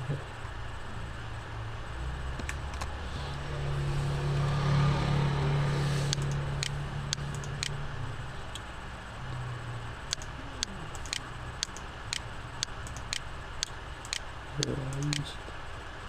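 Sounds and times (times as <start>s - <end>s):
low hum: 0.0s - 16.0s
computer mouse clicks: 6.1s - 7.8s, 10.1s - 15.3s.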